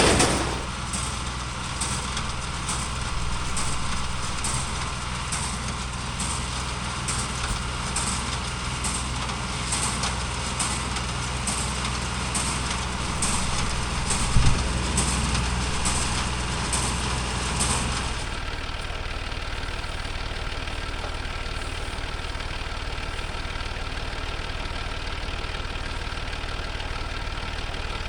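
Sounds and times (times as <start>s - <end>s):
baler clacking: 0.0s - 19.0s
tractor engine running: 0.0s - 28.0s.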